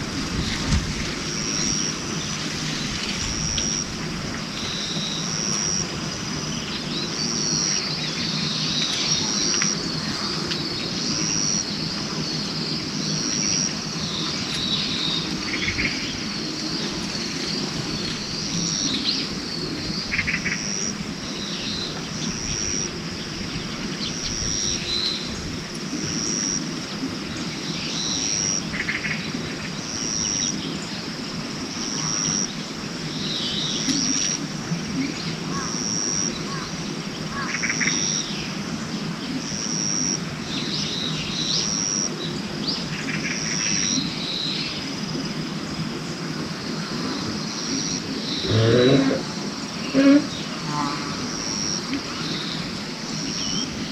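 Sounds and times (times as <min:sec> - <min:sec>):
steady background hum: 0:00.0 - 0:53.9.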